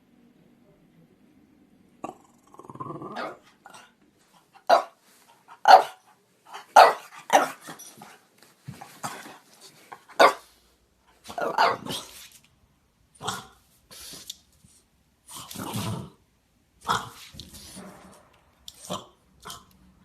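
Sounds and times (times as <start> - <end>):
dog barking: 4.7 - 5.0, 5.6 - 6.0, 6.6 - 7.6, 10.1 - 10.5, 11.3 - 12.1.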